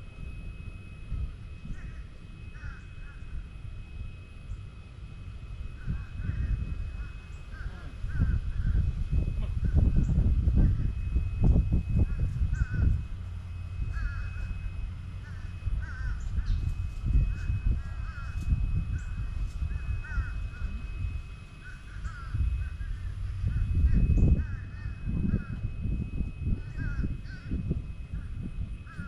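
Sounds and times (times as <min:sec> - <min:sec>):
birds calling: 0:00.6 - 0:29.0.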